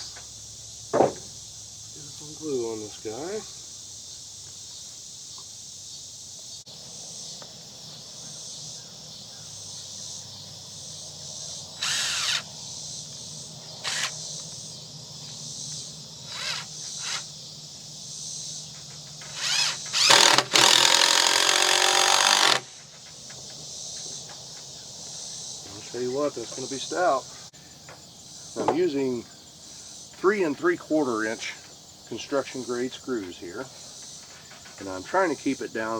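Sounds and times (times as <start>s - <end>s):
impact driver driving screws: 11.8s - 12.4s, 13.9s - 14.2s, 19.2s - 22.7s.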